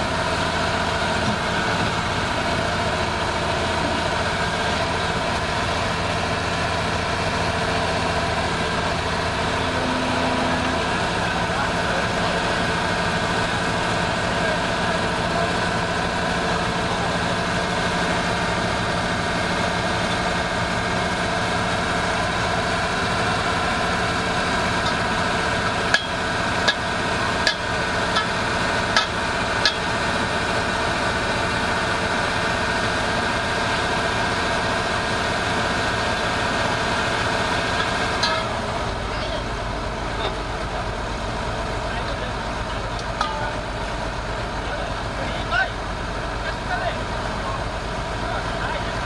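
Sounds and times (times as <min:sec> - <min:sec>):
diesel engine idling: 0:00.0 - 0:49.0.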